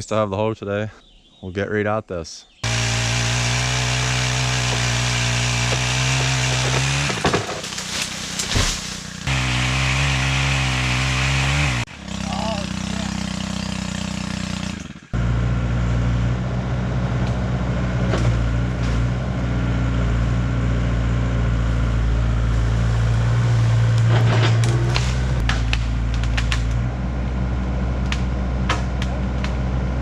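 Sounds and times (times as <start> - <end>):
excavator diesel engine running: 2.6 - 7.2, 7.8 - 30.0
sharp knocks and cracks: 2.6 - 9.5, 23.9 - 26.8, 28.0 - 29.7.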